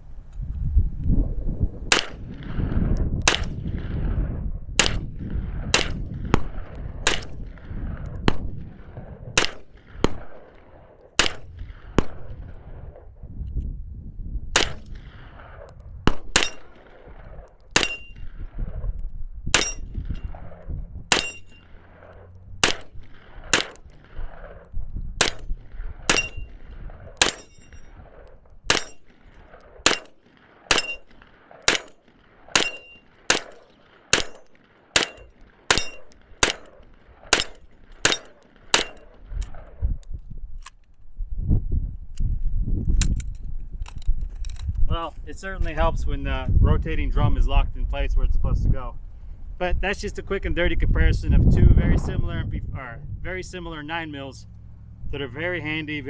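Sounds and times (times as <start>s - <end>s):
wind rumbling on microphone: 0.0s - 56.0s
gun firing single shots: 1.9s - 4.1s, 4.8s - 12.8s, 14.5s - 39.7s
metallic ring after shot: 16.4s - 17.0s, 17.8s - 18.4s, 19.6s - 21.9s, 22.6s - 24.2s, 25.2s - 28.0s, 28.7s - 39.6s.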